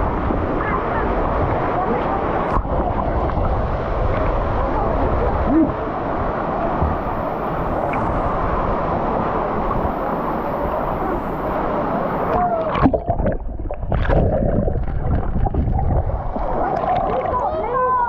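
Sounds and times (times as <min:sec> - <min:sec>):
waterfall rushing: 0:00.0 - 0:13.2
water splashing and gurgling: 0:00.0 - 0:18.0.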